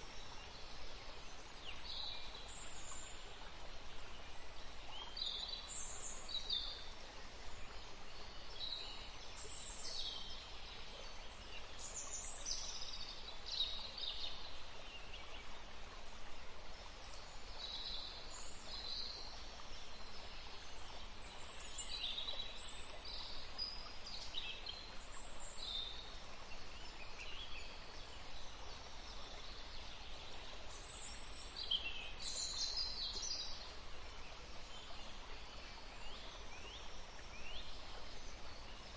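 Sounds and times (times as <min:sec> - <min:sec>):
outdoor background hiss: 0:00.0 - 0:38.9.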